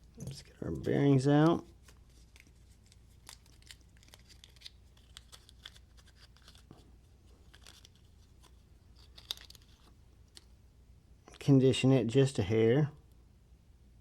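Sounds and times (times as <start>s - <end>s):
small clicks and rustles: 0.0s - 10.6s.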